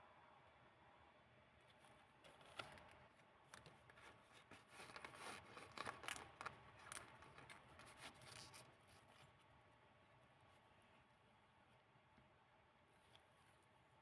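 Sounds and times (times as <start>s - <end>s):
paper pages rustling: 1.7s - 9.4s.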